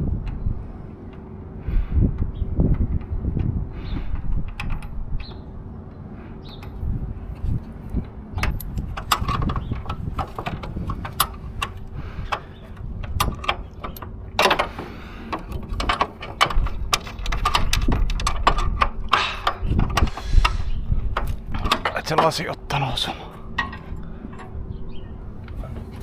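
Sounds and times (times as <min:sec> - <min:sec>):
hand tools and metal parts clinking: 0:06.4 - 0:24.6, 0:25.2 - 0:26.0
rushing scrape: 0:20.0 - 0:20.8.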